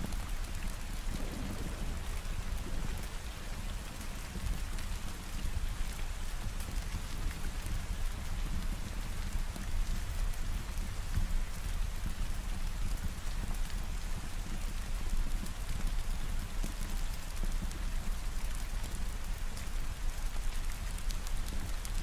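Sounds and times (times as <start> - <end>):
rain falling: 0.0 - 22.0.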